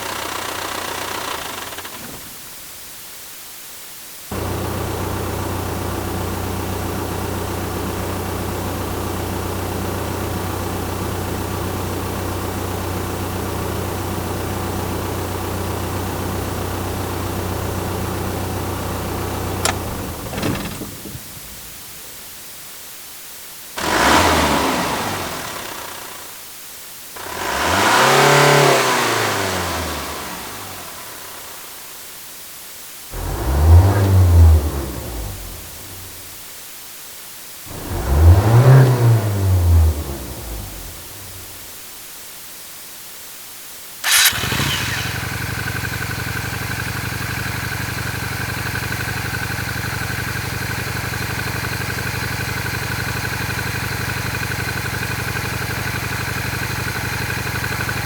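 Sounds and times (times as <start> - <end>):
engine rattle: 0.0 - 2.5, 4.3 - 11.2, 15.6 - 22.4, 44.0 - 58.0
truck engine idling: 4.3 - 7.4, 17.1 - 22.4, 44.0 - 46.4
engine revving: 19.6 - 21.8, 23.8 - 26.1, 27.2 - 31.0, 33.2 - 36.1, 37.7 - 41.4, 44.0 - 46.2.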